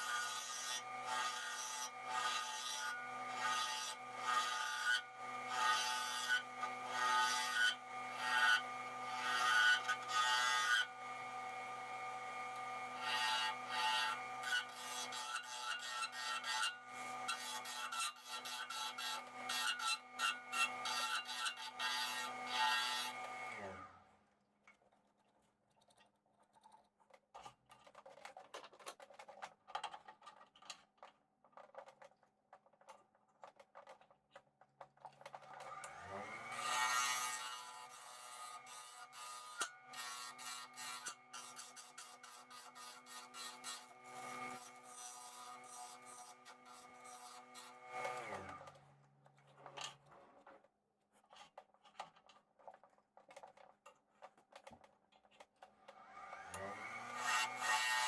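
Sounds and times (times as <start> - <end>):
turning tool rasping on wood: 38.6 - 48.3, 57.0 - 58.0
wood lathe humming: 56.6 - 58.0.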